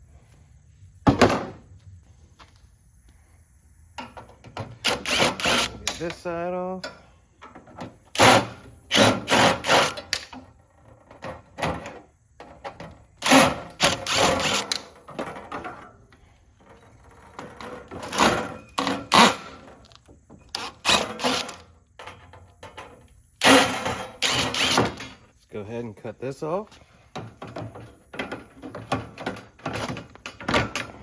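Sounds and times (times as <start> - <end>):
cordless drill bursts: 4.8 - 5.8, 23.4 - 25.1.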